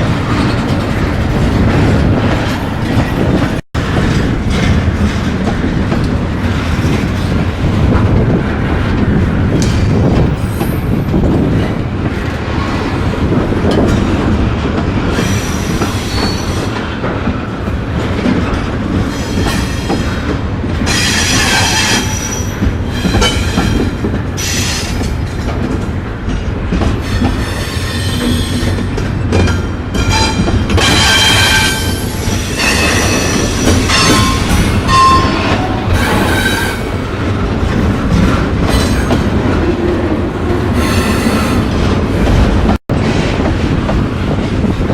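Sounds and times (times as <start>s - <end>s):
freight train rumbling past: 0.0s - 44.9s
train wheels squealing on rail: 10.3s - 11.1s, 15.1s - 16.8s, 19.1s - 20.2s, 20.9s - 25.1s, 27.0s - 36.9s, 40.8s - 41.7s.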